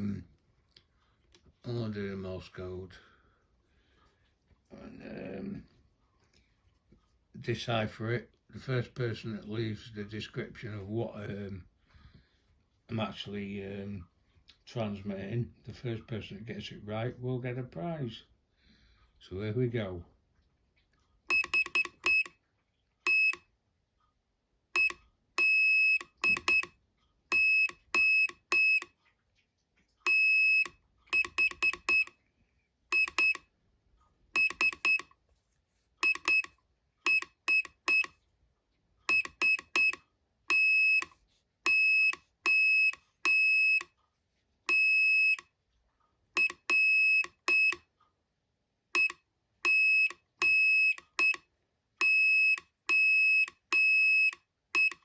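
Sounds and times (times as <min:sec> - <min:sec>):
morse code beeps: 0:21.3 - 0:22.4, 0:24.8 - 0:26.7, 0:27.3 - 0:29.0, 0:30.1 - 0:32.2, 0:32.9 - 0:33.4, 0:34.4 - 0:35.1, 0:36.0 - 0:38.2, 0:39.1 - 0:44.0, 0:46.4 - 0:47.9, 0:49.0 - 0:55.0.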